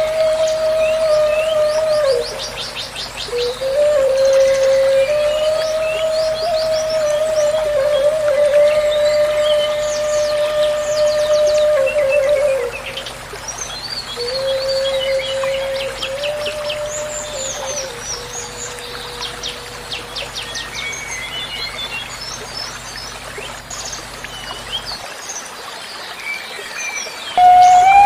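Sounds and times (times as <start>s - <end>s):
bamboo flute low held notes: 0.0s - 2.6s, 3.2s - 13.0s, 14.1s - 20.5s, 27.4s - 28.0s
birds chirping and trilling: 26.4s - 28.0s.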